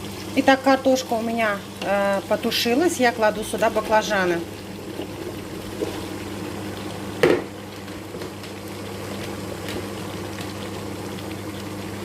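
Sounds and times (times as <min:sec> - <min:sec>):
food sizzling in oil: 0:00.0 - 0:12.0
utensil knocking on pot: 0:07.2 - 0:07.5.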